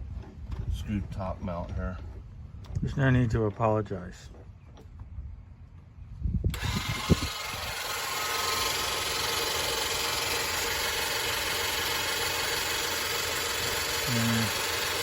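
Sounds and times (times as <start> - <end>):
electric jack motor pump running: 6.5 - 15.0.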